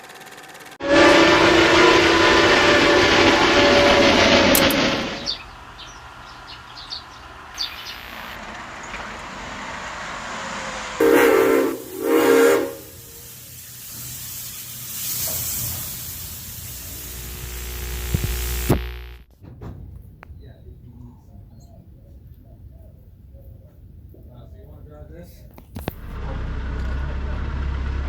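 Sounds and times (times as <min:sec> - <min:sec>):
steam locomotive hissing: 0:00.0 - 0:18.7
steam whistle blasts: 0:00.8 - 0:05.4, 0:11.0 - 0:13.6.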